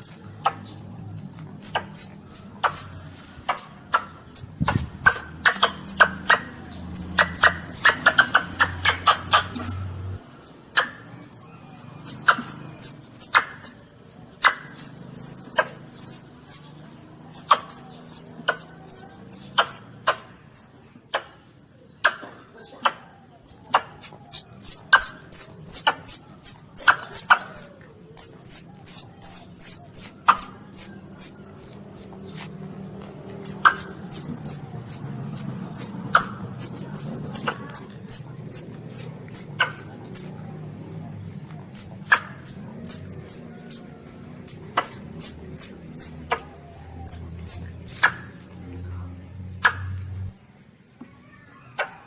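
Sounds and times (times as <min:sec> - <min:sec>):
civet squeaking: 0:00.0 - 0:09.7, 0:11.6 - 0:20.7, 0:23.9 - 0:40.4, 0:41.4 - 0:48.5.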